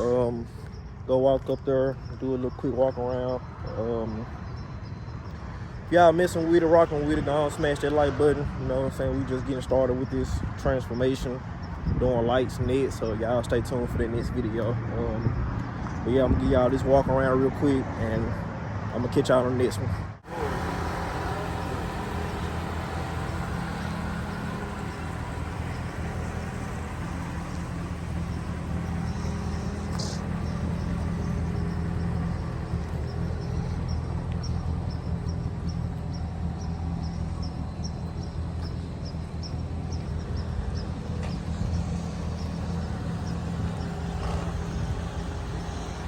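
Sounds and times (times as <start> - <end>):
truck engine idling: 19.0 - 46.0
quick high chirping ticks: 21.1 - 46.0.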